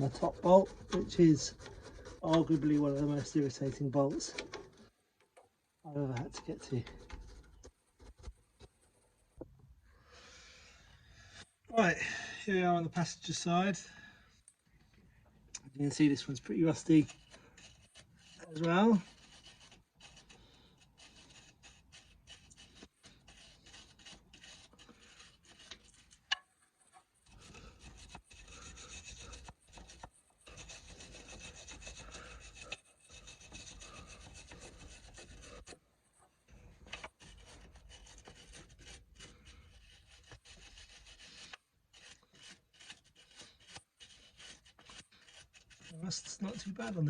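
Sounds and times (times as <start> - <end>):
scraping and scrubbing on metal: 0.0 - 5.0, 5.9 - 9.1, 15.8 - 47.0.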